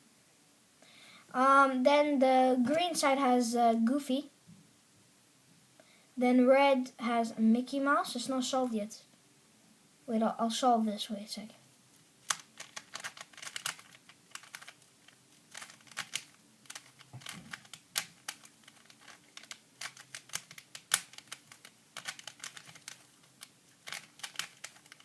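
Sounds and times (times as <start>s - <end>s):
puzzle cube clicking: 12.2s - 25.0s.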